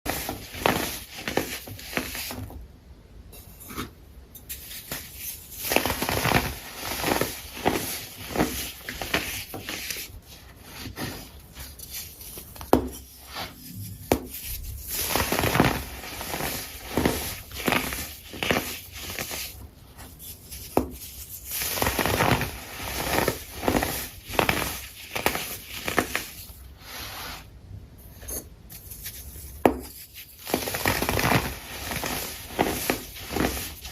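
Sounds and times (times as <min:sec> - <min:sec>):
crunching and crackling: 0:30.4 - 0:33.9.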